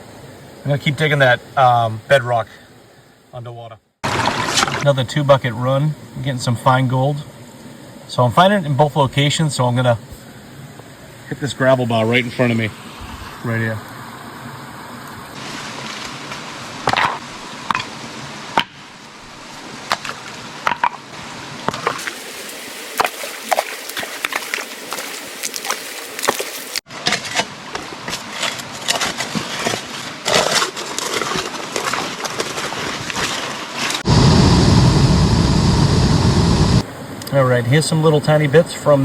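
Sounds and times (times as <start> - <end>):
loud low rushing noise: 34.0 - 36.9.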